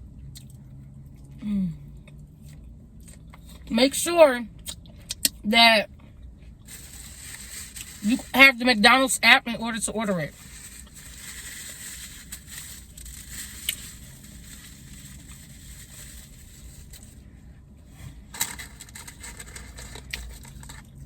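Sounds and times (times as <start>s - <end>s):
low steady hum: 0.0s - 21.0s
wrappers rustling: 6.7s - 8.6s, 9.7s - 17.2s, 18.4s - 21.0s
food crunching: 10.4s - 15.7s.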